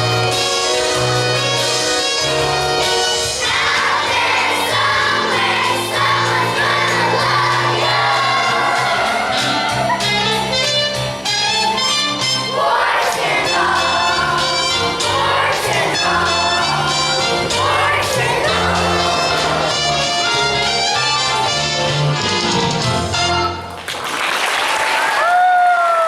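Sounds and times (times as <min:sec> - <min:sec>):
instrumental accompaniment: 0:00.0 - 0:23.9
children singing together: 0:03.2 - 0:10.5, 0:12.5 - 0:20.7.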